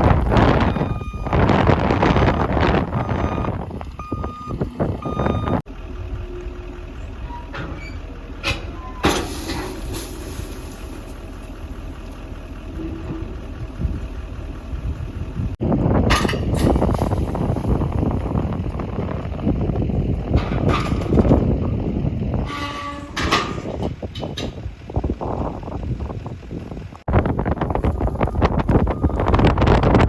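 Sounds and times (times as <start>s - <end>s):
vehicle engine running: 0.0s - 22.5s, 23.6s - 30.0s
electronic warning beeps: 0.6s - 1.4s, 3.0s - 5.6s.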